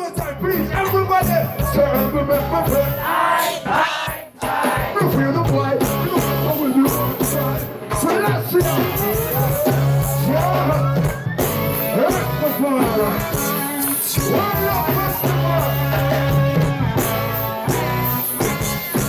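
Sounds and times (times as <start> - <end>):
guitar: 0.0 - 3.2, 4.4 - 19.0
reggae bass line: 0.0 - 3.4, 4.3 - 19.0
voices singing: 0.0 - 19.0.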